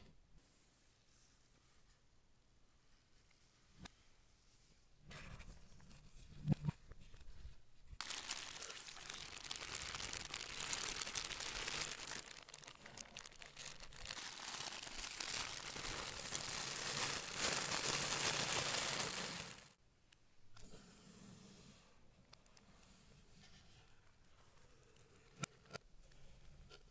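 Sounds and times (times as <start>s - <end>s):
packaging crinkling: 8.0s - 19.8s.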